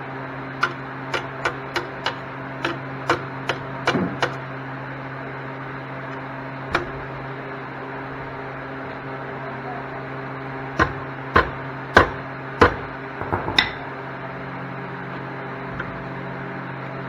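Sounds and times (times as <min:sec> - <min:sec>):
hammer striking metal: 0:00.6 - 0:04.4, 0:10.8 - 0:14.0.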